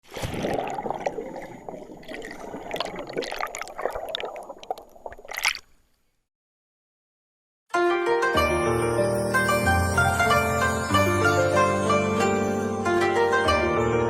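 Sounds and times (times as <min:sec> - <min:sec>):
small clicks and splashes: 0:00.0 - 0:06.0
water sloshing and gurgling: 0:00.0 - 0:06.0.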